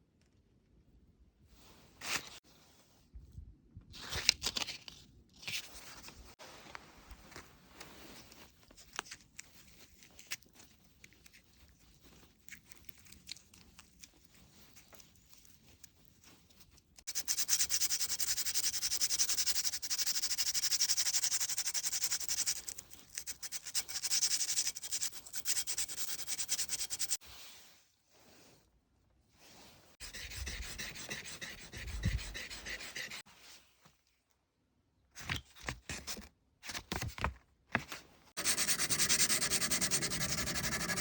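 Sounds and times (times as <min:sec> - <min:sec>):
steel blade rubbing on abrasive: 0:30.0 - 0:33.2, 0:38.4 - 0:41.0.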